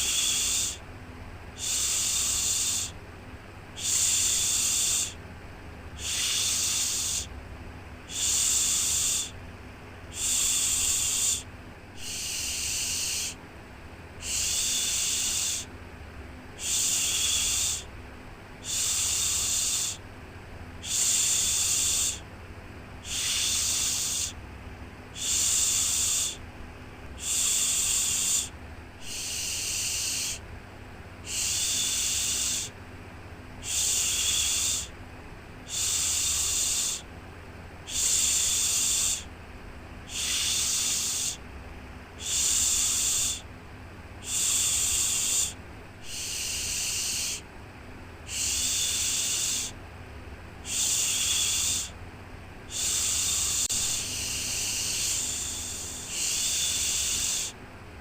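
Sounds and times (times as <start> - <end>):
faint low hum: 0.0 - 58.0
person shushing: 6.0 - 7.3, 10.1 - 13.4, 14.2 - 15.7, 27.2 - 30.4, 31.3 - 32.8, 33.6 - 34.9, 35.7 - 37.1, 37.9 - 39.3, 44.2 - 47.4, 48.3 - 49.8, 50.6 - 52.0, 52.7 - 57.6.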